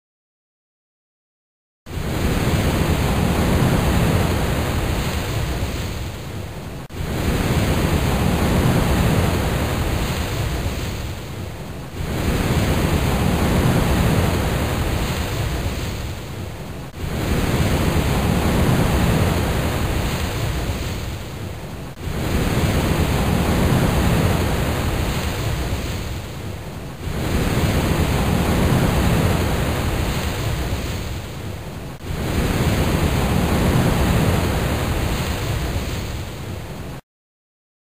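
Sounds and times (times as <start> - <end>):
surf breaking on rocky shore: 1.9 - 37.0
wind buffeting microphone: 1.9 - 37.0.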